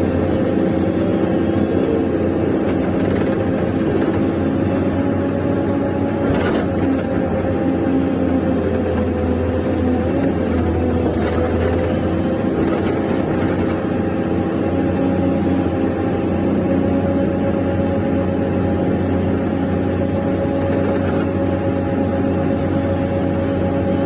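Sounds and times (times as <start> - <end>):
electric motors humming and whining: 0.0 - 24.0.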